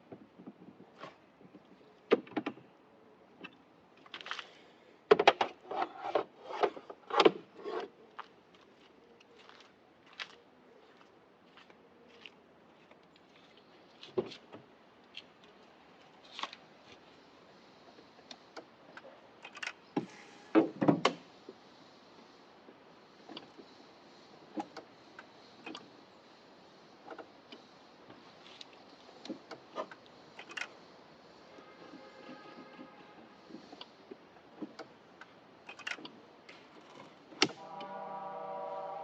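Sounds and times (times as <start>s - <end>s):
clicks and knocks of tools: 18.2s - 19.8s, 28.5s - 30.8s, 34.6s - 37.6s.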